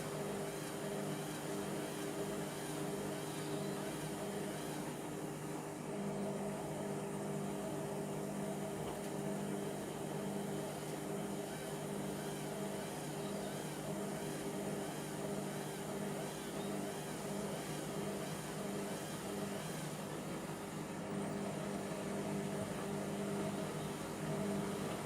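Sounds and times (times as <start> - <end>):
washing machine running: 0.0 - 25.0.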